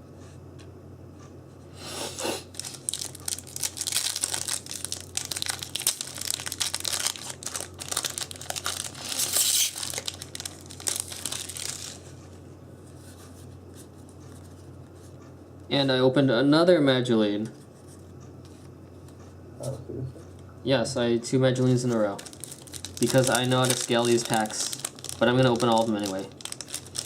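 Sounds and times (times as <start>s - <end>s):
foil wrappers crinkling and tearing: 2.4s - 12.2s, 21.6s - 27.0s.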